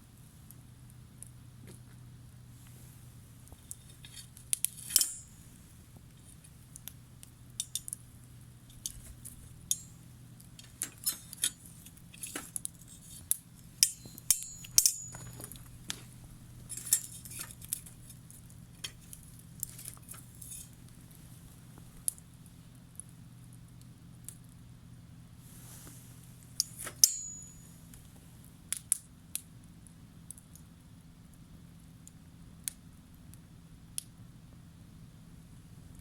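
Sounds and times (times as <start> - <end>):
low hum: 0.0 - 28.7
campfire crackling: 0.0 - 36.0.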